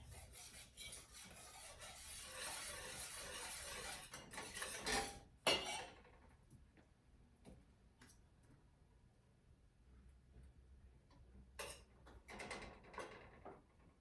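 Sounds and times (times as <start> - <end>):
whisk scraping a saucepan: 0.0 - 6.0.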